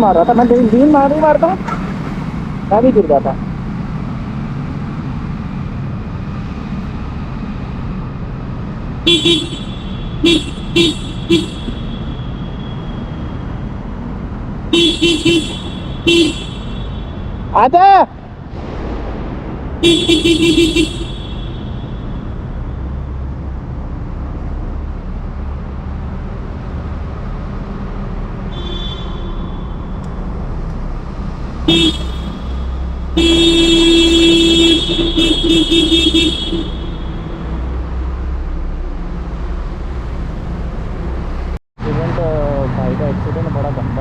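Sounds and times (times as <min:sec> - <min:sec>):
low engine and road rumble: 0:00.0 - 0:44.0
vehicle horn honking: 0:09.0 - 0:13.4, 0:14.7 - 0:17.5, 0:19.8 - 0:22.4, 0:28.5 - 0:30.0, 0:31.7 - 0:37.8.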